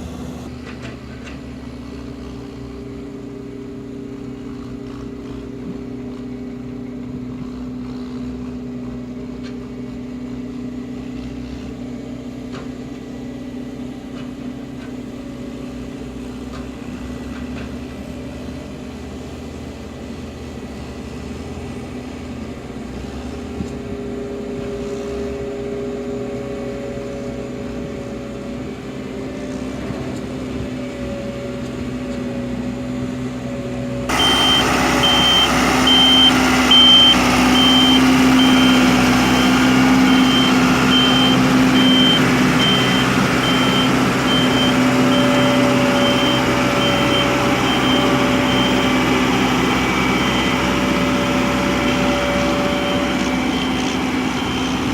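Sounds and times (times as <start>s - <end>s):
heavy vehicle engine running: 0.0s - 54.9s
reversing alarm beeping: 34.1s - 54.9s.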